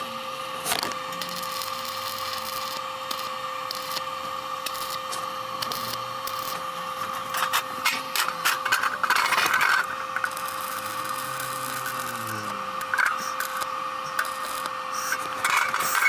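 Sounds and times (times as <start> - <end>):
welding arc crackling: 0.0 - 16.0
welding machine hum: 0.0 - 16.0.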